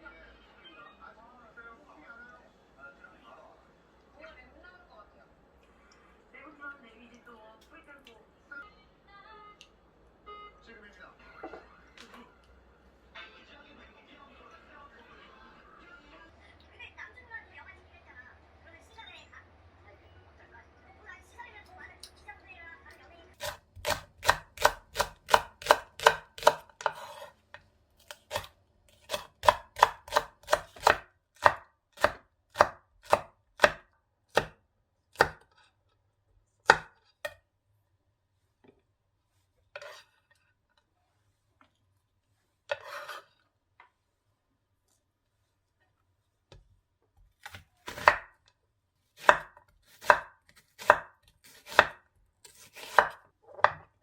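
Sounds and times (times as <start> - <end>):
knife chopping on a cutting board: 23.4 - 35.5, 36.6 - 37.4, 39.8 - 40.0, 42.7 - 43.2, 47.2 - 48.4, 49.2 - 54.0.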